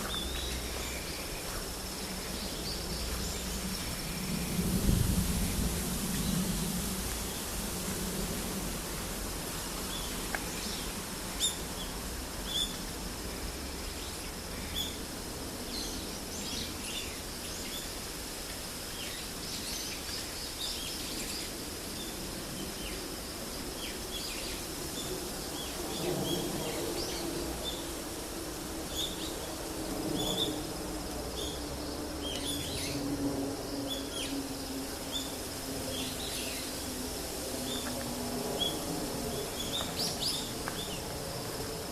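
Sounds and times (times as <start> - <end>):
small birds chirping: 0.0 - 4.6
low drone: 20.6 - 41.9.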